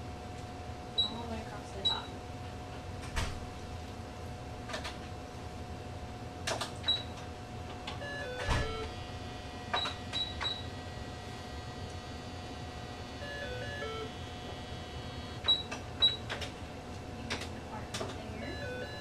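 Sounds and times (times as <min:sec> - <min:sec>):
electronic tones: 0:08.0 - 0:09.1, 0:13.1 - 0:16.2, 0:18.4 - 0:19.0.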